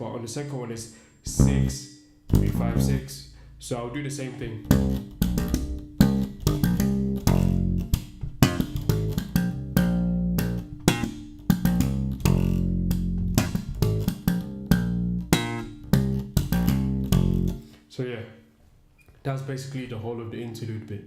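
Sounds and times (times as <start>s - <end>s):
electric bass plucked notes: 1.3s - 17.7s.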